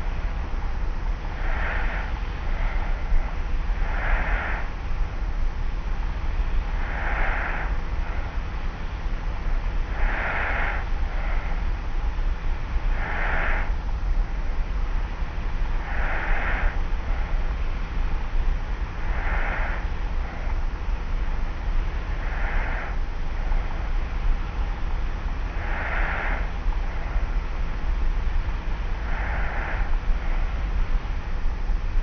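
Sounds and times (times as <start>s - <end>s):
cassette tape hum and hiss: 0.0s - 32.0s
person snoring lightly: 25.5s - 27.2s.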